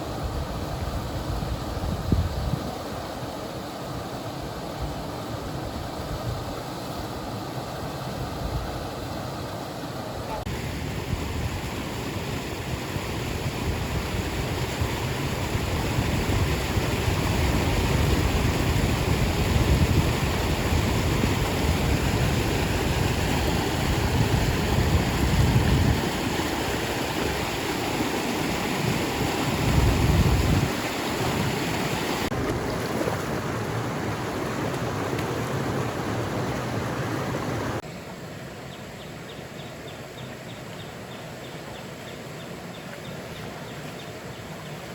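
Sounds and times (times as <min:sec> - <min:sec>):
wind buffeting microphone: 0:00.2 - 0:02.7, 0:10.5 - 0:27.7, 0:28.4 - 0:37.8.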